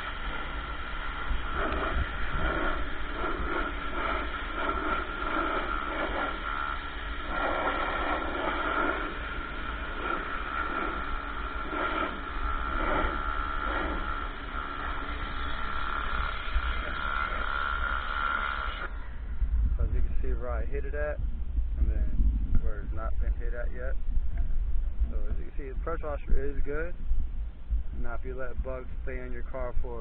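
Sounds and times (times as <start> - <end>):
water jet spray hissing: 0.0 - 18.9
pressure washer pump whine: 0.0 - 19.9.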